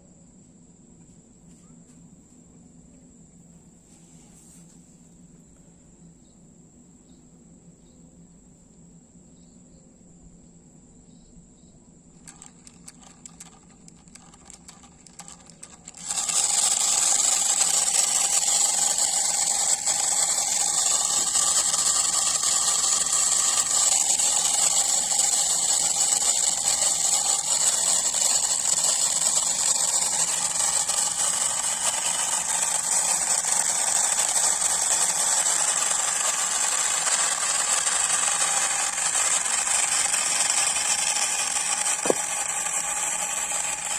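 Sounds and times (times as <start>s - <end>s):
miniature diesel engine rattling: 12.1s - 43.9s.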